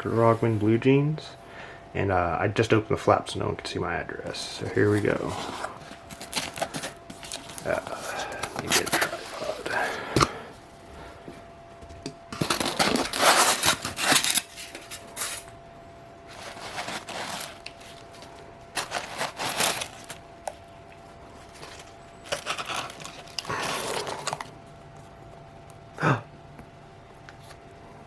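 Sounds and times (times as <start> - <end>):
packing material rustling and tearing: 4.6 - 9.8, 12.3 - 15.5, 16.3 - 20.6, 21.3 - 24.5.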